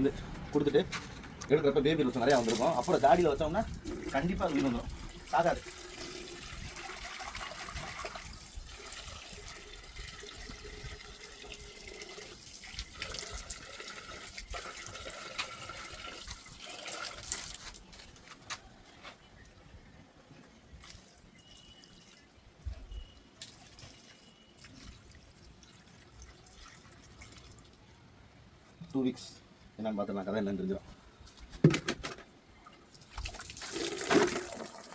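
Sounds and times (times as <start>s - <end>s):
water running and splashing: 2.1s - 18.1s.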